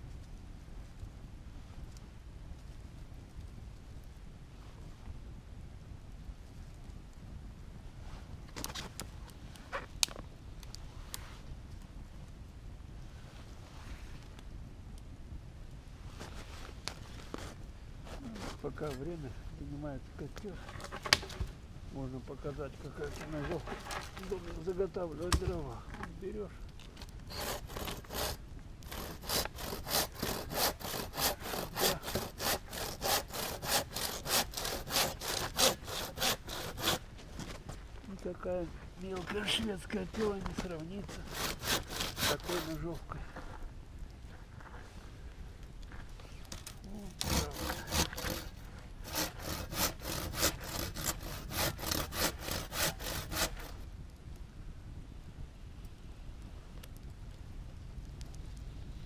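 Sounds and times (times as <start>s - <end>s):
hand saw cutting firewood: 20.5s - 21.4s, 22.9s - 24.7s, 27.0s - 37.5s, 41.0s - 43.0s, 46.5s - 53.8s.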